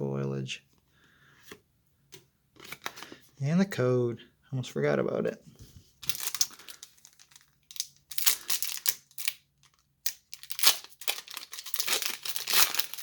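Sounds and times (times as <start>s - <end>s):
foil wrapper crinkling and tearing: 6.0s - 13.0s.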